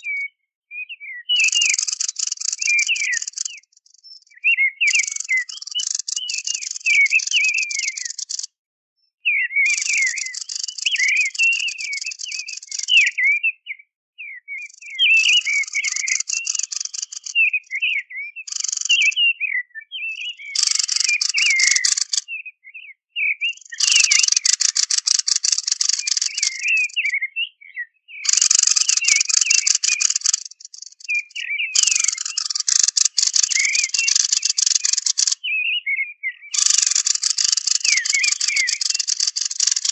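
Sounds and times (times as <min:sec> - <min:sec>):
bird warbling song: 0:00.0 - 0:39.9
bird rattling chatter: 0:01.4 - 0:03.6, 0:05.0 - 0:08.5, 0:09.8 - 0:12.9, 0:15.5 - 0:17.3, 0:18.5 - 0:19.0, 0:20.6 - 0:22.2, 0:23.8 - 0:26.6, 0:28.3 - 0:31.2, 0:31.8 - 0:35.4, 0:36.6 - 0:39.9.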